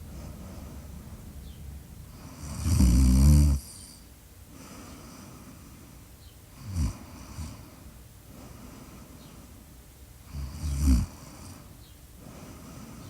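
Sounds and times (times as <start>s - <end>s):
person snoring: 2.3s - 4.0s, 10.3s - 11.5s.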